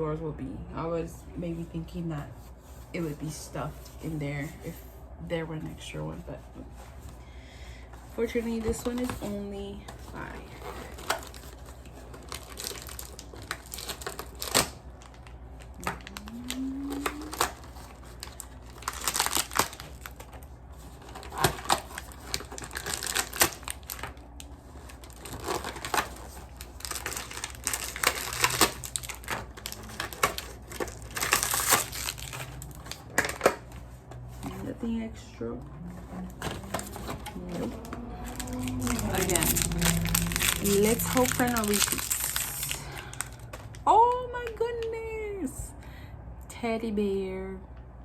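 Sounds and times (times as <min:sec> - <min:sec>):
plastic wrappers crinkling: 0:08.2 - 0:35.0, 0:35.9 - 0:44.5.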